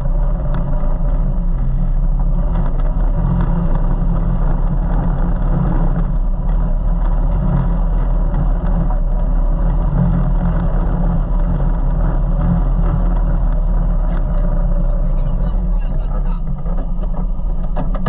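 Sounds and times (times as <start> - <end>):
vehicle engine rumbling: 0.0 - 18.0.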